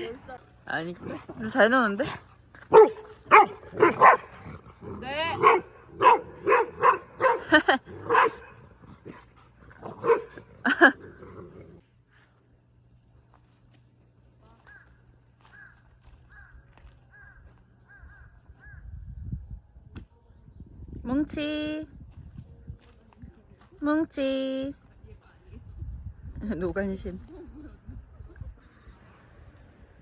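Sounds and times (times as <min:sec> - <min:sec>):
dog barking: 0:02.0 - 0:09.2, 0:09.8 - 0:10.6.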